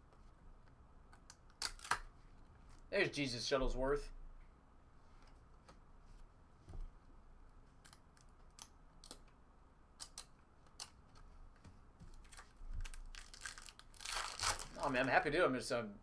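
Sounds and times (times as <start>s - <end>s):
trading cards clicking: 10.0s - 11.2s.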